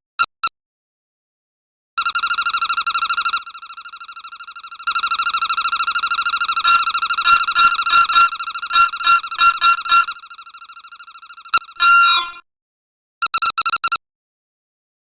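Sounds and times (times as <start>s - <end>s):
dog toy squeaking: 4.9s - 12.4s.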